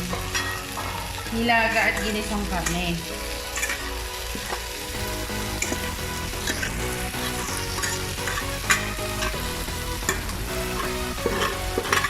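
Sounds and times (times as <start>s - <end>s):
food sizzling in a pan: 0.0s - 12.0s
utensil scraping a pan: 5.6s - 12.0s.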